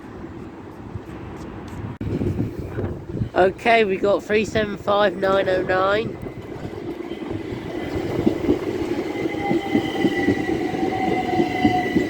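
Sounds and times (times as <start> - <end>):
electric train whine: 4.8 - 12.0
wheels clicking on track: 5.2 - 12.0.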